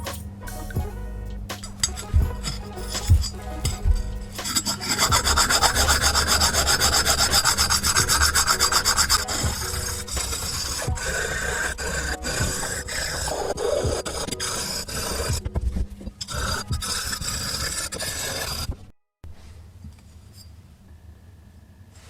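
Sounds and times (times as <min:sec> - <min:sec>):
hand rubbing on metal: 0:01.3 - 0:18.8.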